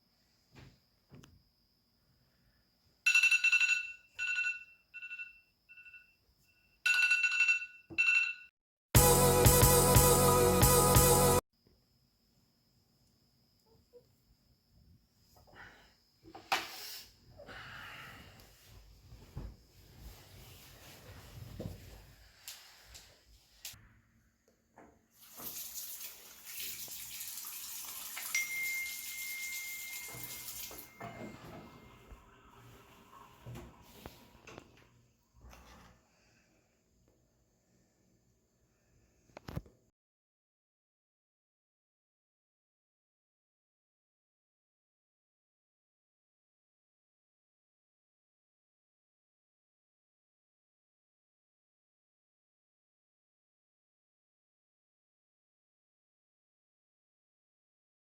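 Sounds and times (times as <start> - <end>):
electronic ringing tone: 3.1 - 6.2, 6.9 - 8.5, 28.4 - 31.4
music: 9.0 - 11.4
water running from tap: 25.2 - 31.0.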